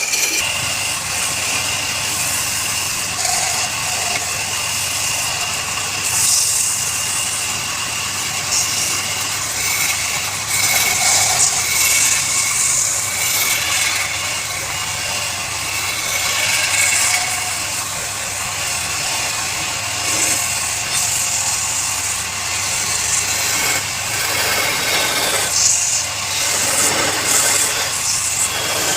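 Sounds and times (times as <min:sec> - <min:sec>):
lathe motor hum: 0:00.0 - 0:28.9
lathe tool cutting wood: 0:00.0 - 0:28.9.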